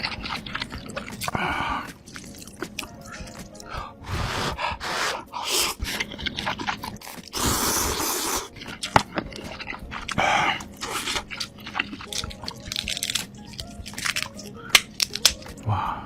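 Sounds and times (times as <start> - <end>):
person chewing food: 0.0 - 15.6
person slurping food: 4.0 - 8.6, 9.4 - 12.0.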